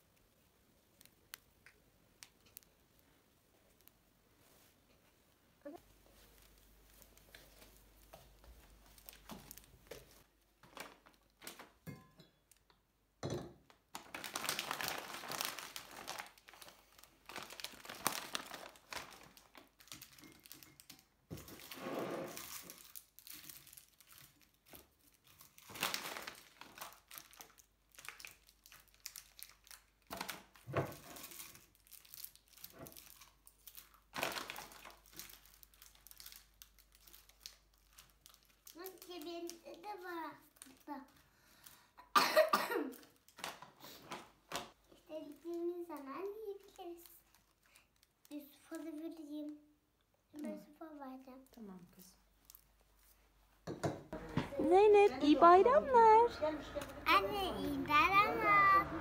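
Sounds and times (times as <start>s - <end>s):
packaging crinkling: 6.2s - 11.8s, 13.9s - 39.8s.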